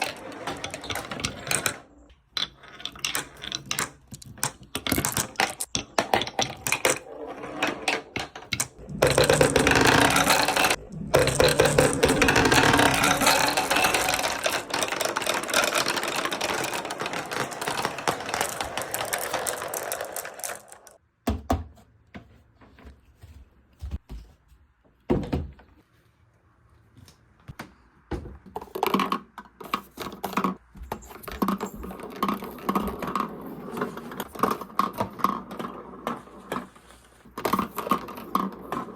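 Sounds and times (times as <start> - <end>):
marbles clattering down a run: 0.0 - 21.0.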